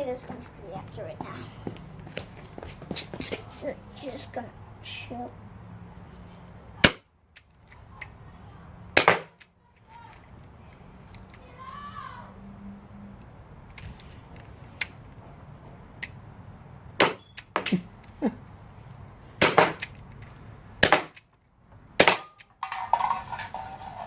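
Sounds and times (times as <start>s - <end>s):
bb gun firing pops: 9.0s - 9.5s, 20.8s - 21.3s.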